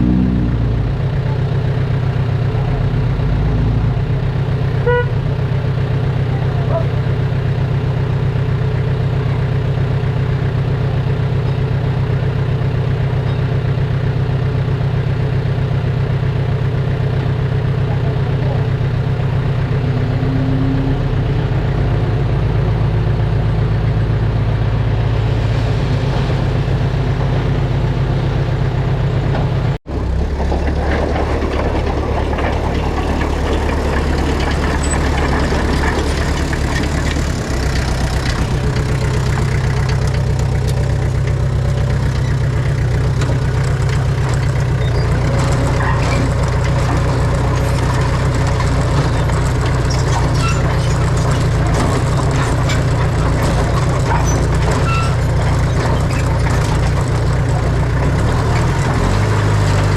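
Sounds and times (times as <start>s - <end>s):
heavy diesel engine running: 0.0s - 59.9s
rattle and clatter: 29.2s - 59.9s.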